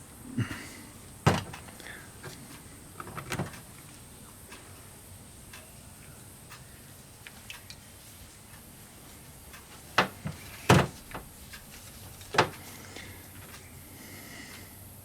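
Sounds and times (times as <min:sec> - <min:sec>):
faint ticks: 0:00.4 - 0:14.9
parts and tools knocking: 0:01.2 - 0:03.7, 0:09.9 - 0:12.7.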